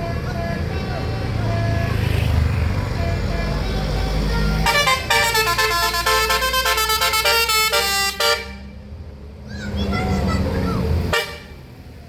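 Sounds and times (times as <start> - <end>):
multi-note bus air horn melody: 3.0 - 8.8, 11.1 - 11.7.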